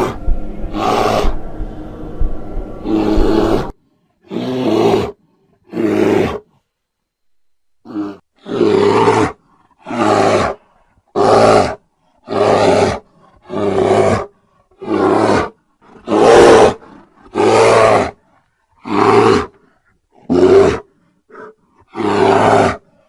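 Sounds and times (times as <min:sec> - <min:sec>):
deep animal-like roar: 0:00.0 - 0:06.4.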